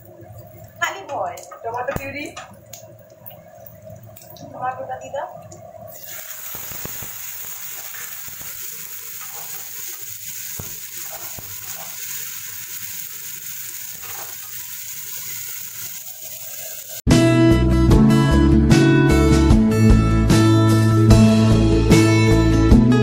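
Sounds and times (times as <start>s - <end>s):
vegetables sizzling in a pan: 5.9s - 17.1s
guitar music: 17.1s - 23.0s.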